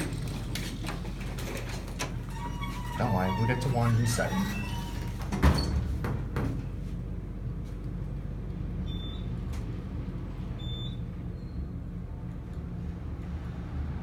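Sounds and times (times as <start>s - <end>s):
elevator car humming: 0.0s - 5.9s.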